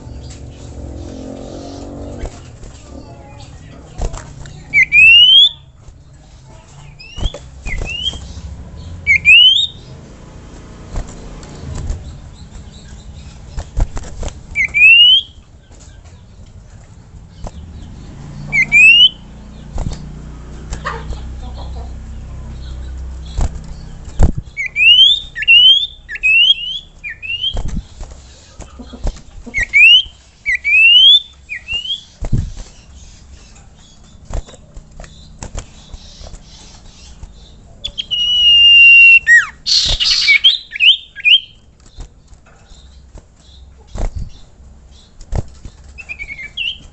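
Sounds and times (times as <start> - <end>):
bird rising whistles: 9.1 - 9.8, 14.6 - 15.3, 18.6 - 19.2, 38.0 - 41.5
bird harsh call: 37.8 - 41.5.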